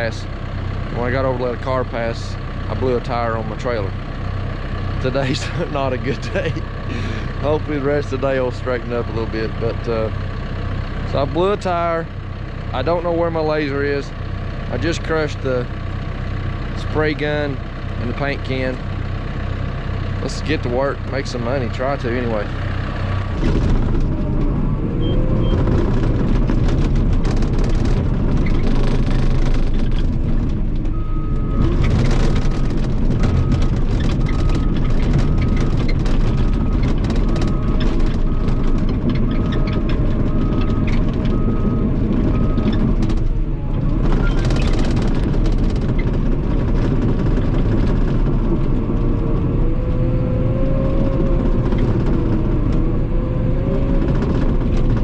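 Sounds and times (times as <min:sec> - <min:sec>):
bulldozer diesel engine: 0:00.0 - 0:55.0
reverse alarm beeping: 0:25.0 - 0:25.7.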